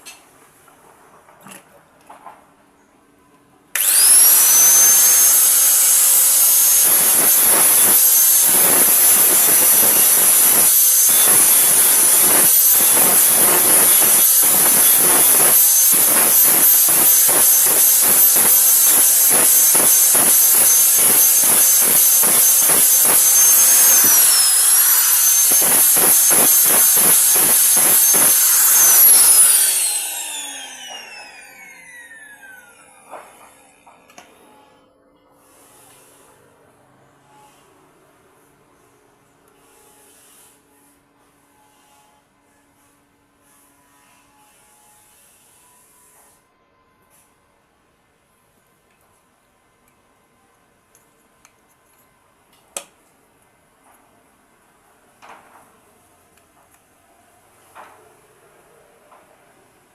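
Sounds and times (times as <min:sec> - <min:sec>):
grinder grinding metal: 0:03.8 - 0:34.1
electric grinder whining: 0:03.8 - 0:34.5.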